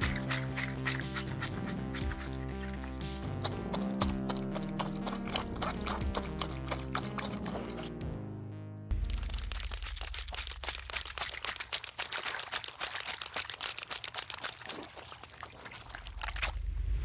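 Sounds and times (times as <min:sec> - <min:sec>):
small clicks and crackles: 0:09.0 - 0:16.7.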